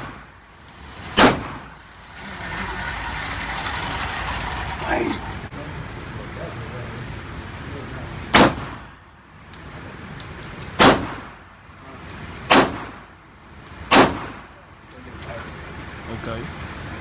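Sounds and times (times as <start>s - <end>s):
gunshots: 1.0s - 1.7s, 8.3s - 8.9s, 10.8s - 11.4s, 12.5s - 13.0s, 13.9s - 14.4s.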